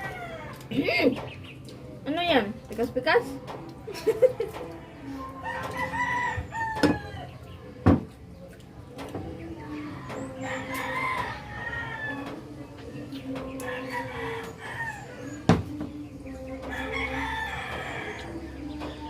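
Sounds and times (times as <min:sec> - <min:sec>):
rooster crowing: 0:00.0 - 0:00.6, 0:05.4 - 0:07.4, 0:10.4 - 0:12.6, 0:13.6 - 0:15.5, 0:16.6 - 0:18.5.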